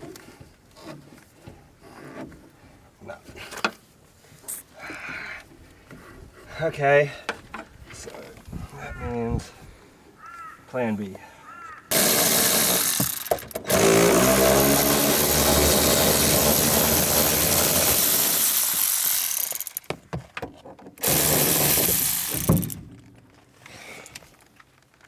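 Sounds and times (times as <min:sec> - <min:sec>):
handheld power tool whining: 0:11.9 - 0:20.0, 0:21.0 - 0:22.8.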